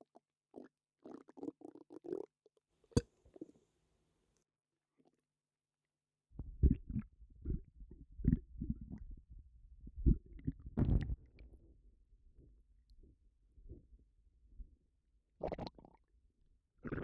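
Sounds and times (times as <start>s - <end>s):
stomach gurgling: 0.0s - 2.6s, 6.4s - 9.3s, 9.9s - 11.4s, 15.4s - 16.1s, 16.8s - 17.0s.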